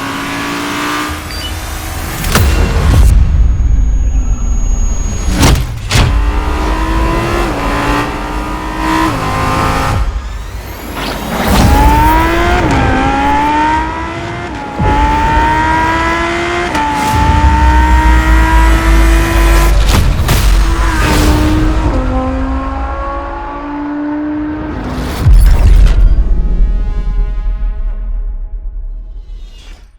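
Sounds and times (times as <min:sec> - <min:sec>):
sports car accelerating: 0:00.0 - 0:02.6, 0:03.9 - 0:25.2.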